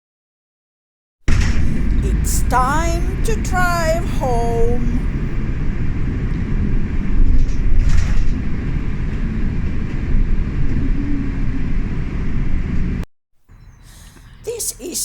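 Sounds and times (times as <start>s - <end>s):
car road and engine rumble: 1.3s - 7.8s.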